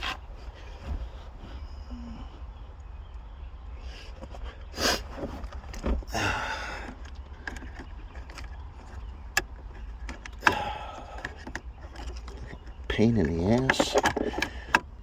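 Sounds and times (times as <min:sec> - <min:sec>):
plastic scraping rattle: 0:00.0 - 0:01.6, 0:05.0 - 0:15.0
sharp plastic clicks: 0:06.9 - 0:15.0.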